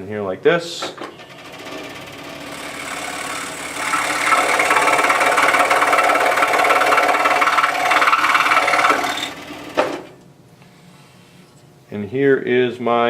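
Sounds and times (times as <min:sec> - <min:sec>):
scroll saw cutting wood: 0:01.2 - 0:10.2.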